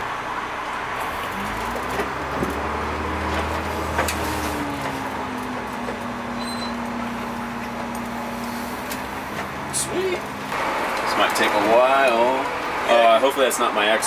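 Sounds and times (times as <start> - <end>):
bus engine running: 0.0 - 14.0.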